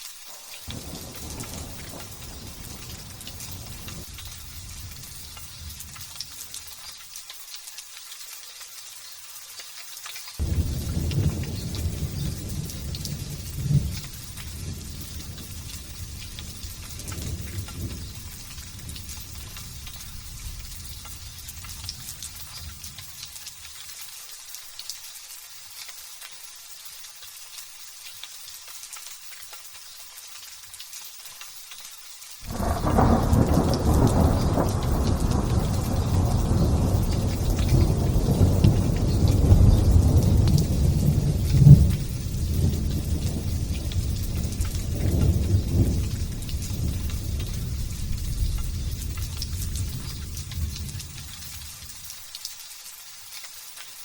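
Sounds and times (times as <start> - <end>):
thunder rolling: 0.6 - 6.3, 10.4 - 23.1, 32.4 - 51.9.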